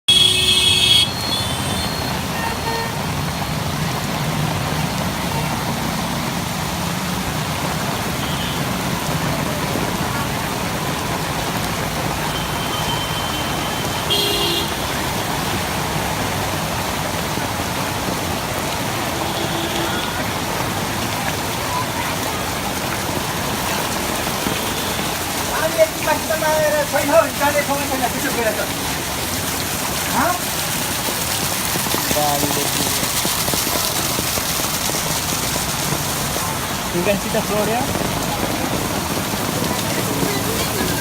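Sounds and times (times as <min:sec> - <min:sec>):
traffic noise: 0:00.0 - 0:41.0
vehicle horn tooting: 0:00.1 - 0:03.0, 0:08.2 - 0:08.7, 0:12.3 - 0:14.8, 0:19.1 - 0:20.2
rushing water: 0:00.1 - 0:41.0.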